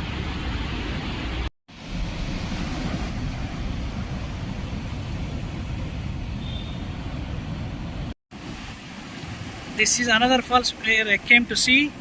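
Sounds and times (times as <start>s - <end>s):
large waterfall roaring: 6.9s - 12.0s.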